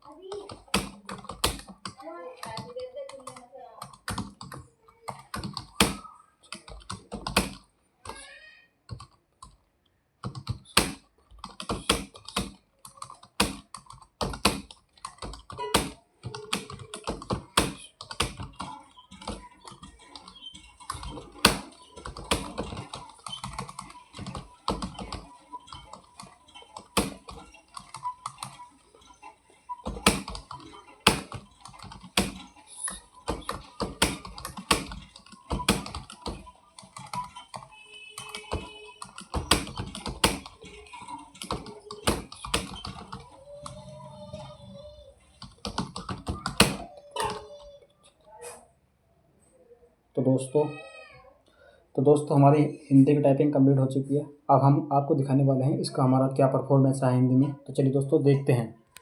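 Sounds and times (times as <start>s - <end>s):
fast keyboard typing: 0.0s - 8.2s, 8.9s - 9.6s, 10.2s - 47.7s.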